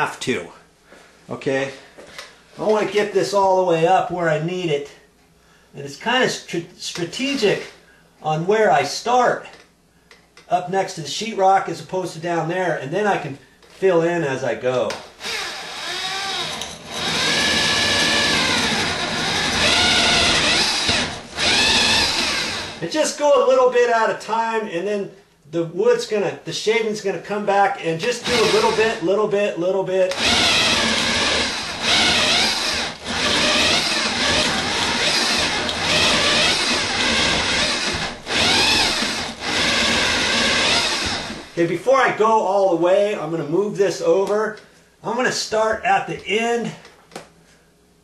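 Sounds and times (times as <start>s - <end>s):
electric drill boring into wood: 15.2s - 22.8s, 28.2s - 29.0s, 30.1s - 41.6s.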